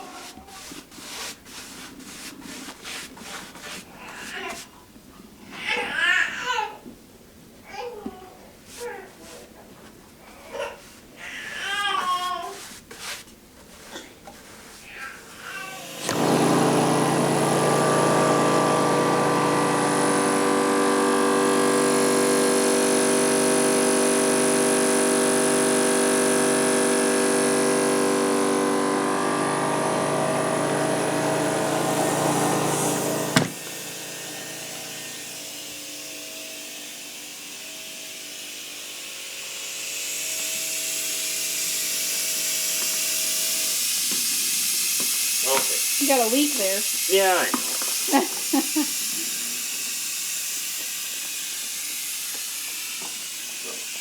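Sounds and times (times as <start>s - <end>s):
electric air compressor running: 15.6s - 54.0s
compressor switch click: 33.3s - 33.8s
air hissing from leak: 40.9s - 54.0s.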